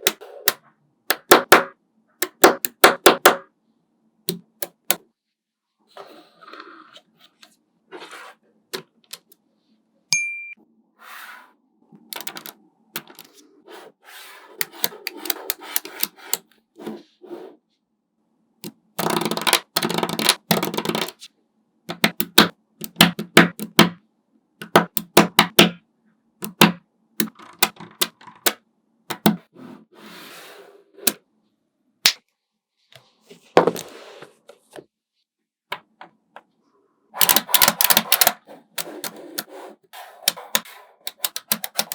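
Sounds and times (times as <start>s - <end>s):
magnetic balls clicking together: 19.0s - 21.3s, 21.9s - 23.9s, 37.2s - 39.5s, 40.3s - 41.9s.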